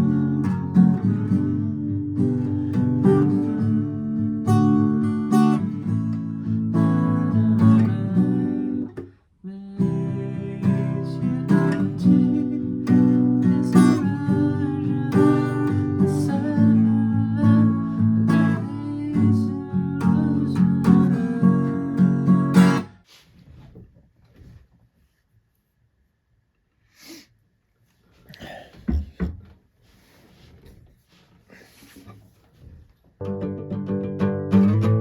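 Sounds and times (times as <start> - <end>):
acoustic guitar strumming: 0.0 - 9.1, 9.8 - 23.0, 33.2 - 35.0.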